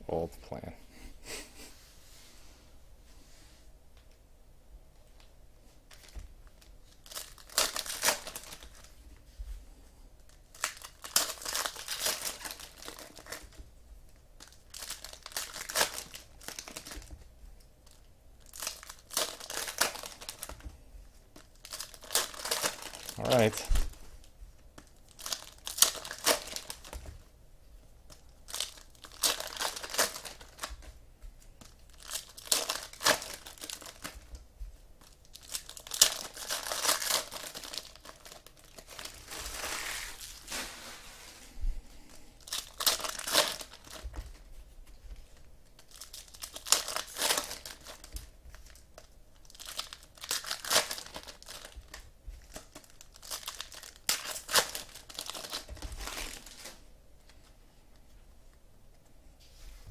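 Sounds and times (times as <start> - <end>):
wrappers tearing and crinkling: 5.9 - 9.0, 10.2 - 13.6, 14.4 - 17.2, 17.8 - 20.7, 21.4 - 23.9, 24.7 - 27.2, 28.1 - 34.4, 35.0 - 41.6, 42.4 - 44.4, 45.6 - 56.9.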